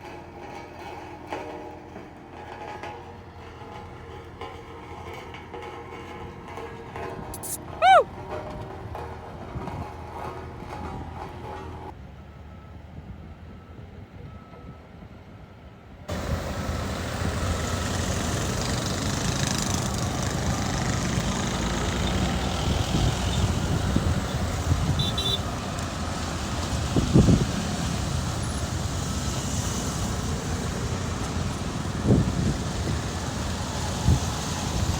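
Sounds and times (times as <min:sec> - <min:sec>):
heavy diesel engine running: 0:16.1 - 0:34.9.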